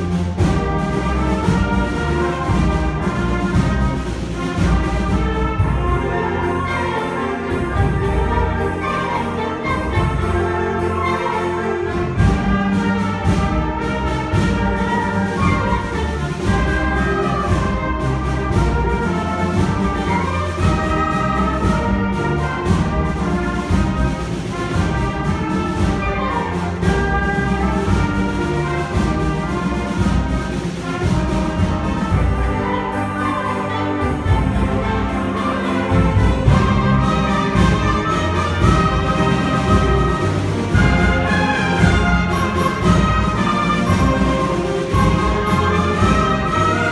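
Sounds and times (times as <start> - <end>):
concert band playing: 0.0 - 46.9.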